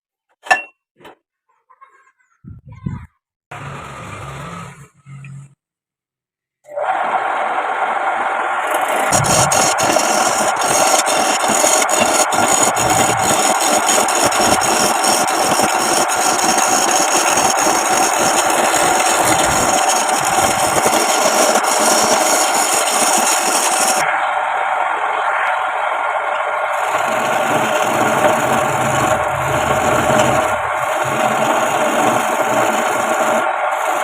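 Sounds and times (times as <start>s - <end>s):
wood lathe scraping wood: 8.2s - 24.0s, 26.7s - 34.0s.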